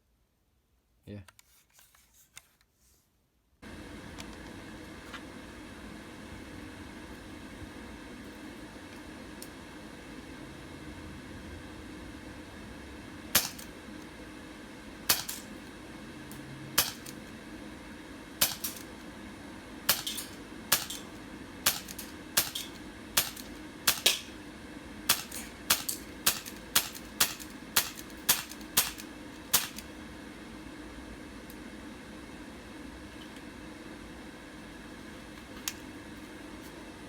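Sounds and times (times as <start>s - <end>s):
airsoft pistol shots: 13.3s - 13.7s, 15.1s - 15.5s, 16.8s - 17.2s, 18.4s - 18.9s, 19.9s - 24.4s, 25.1s - 29.8s.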